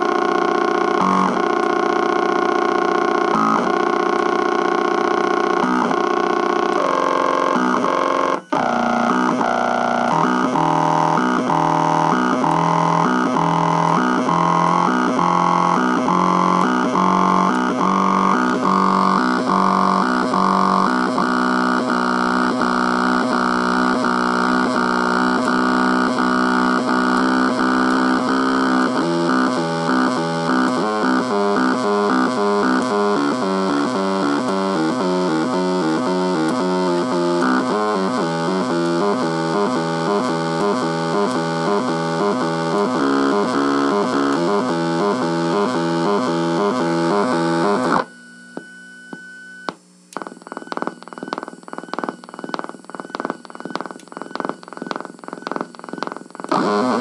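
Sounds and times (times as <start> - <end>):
buzzy stepper motor drone: 4.6 - 48.0.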